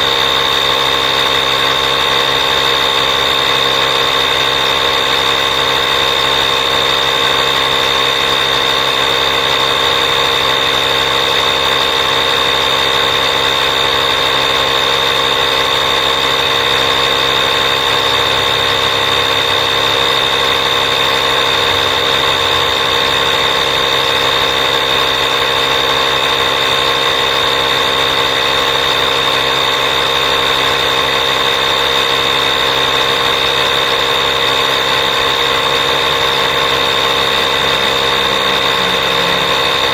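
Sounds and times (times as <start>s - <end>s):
machine drone with high whine: 0.0s - 39.9s.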